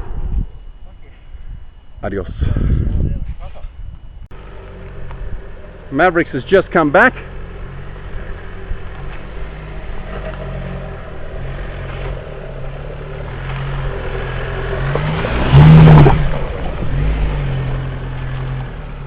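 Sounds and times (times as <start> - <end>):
car engine revving: 4.3 - 19.0.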